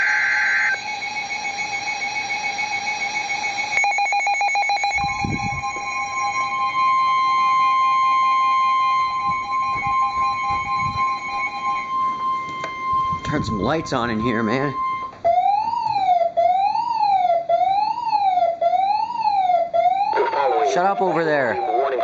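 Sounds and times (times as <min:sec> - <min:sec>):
rapid beeping: 0:00.0 - 0:15.6, 0:18.7 - 0:22.0
steady alarm tone: 0:00.0 - 0:22.0
higher steady tone: 0:04.8 - 0:15.2.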